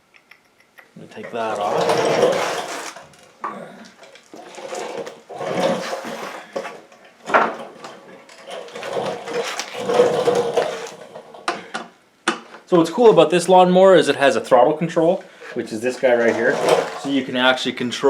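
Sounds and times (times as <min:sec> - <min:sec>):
hand tools and metal parts rattling: 0:00.2 - 0:11.9, 0:15.4 - 0:17.4.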